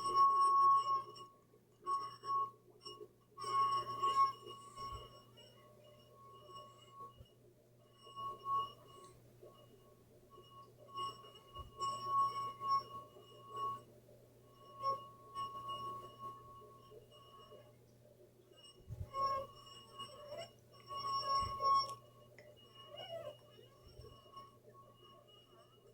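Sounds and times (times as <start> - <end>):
singing wine glass ringing: 18.7 - 25.9.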